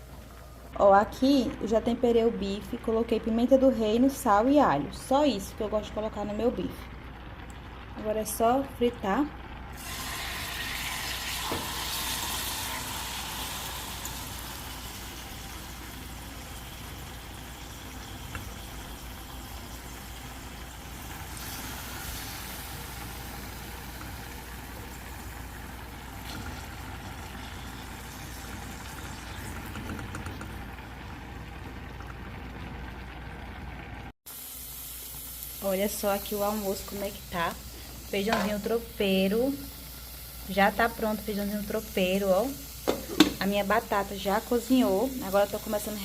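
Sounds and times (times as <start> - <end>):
steak sizzling in pan: 9.8 - 30.0, 34.3 - 46.0.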